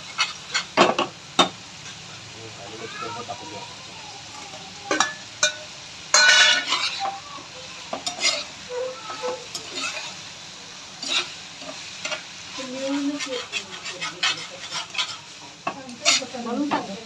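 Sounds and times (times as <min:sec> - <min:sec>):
chicken sizzling in sauce: 0:00.0 - 0:17.0
ladle scraping and knocking pan: 0:04.9 - 0:07.1, 0:13.0 - 0:16.9.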